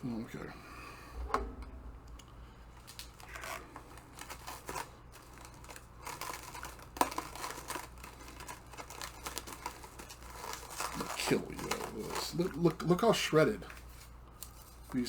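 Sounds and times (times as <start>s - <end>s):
rummaging through packing peanuts: 2.8s - 14.0s.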